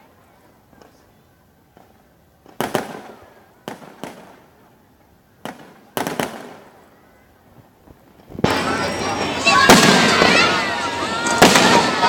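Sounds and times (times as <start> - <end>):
fireworks bangs with echo: 1.7 - 4.7, 5.4 - 6.9, 8.0 - 12.0.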